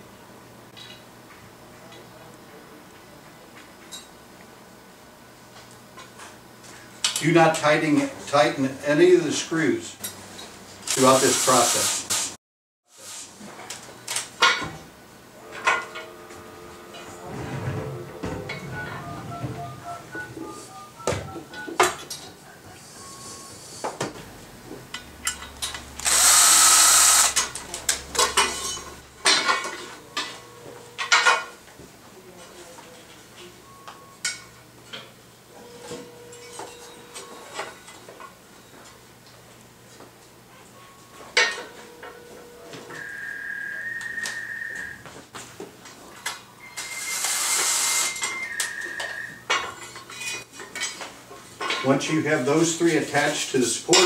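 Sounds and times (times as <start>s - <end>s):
drill driver driving screw: 26.0s - 27.5s.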